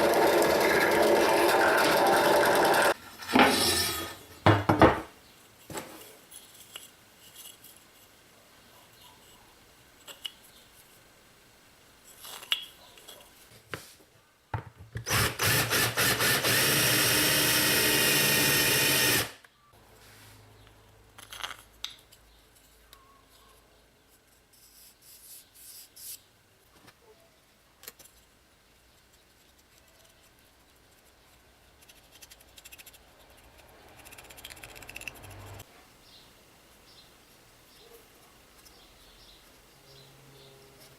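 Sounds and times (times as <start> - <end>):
power drill running: 0.0 - 3.0, 15.1 - 19.4
tools being handled: 5.6 - 8.2, 10.0 - 10.9, 12.0 - 13.4.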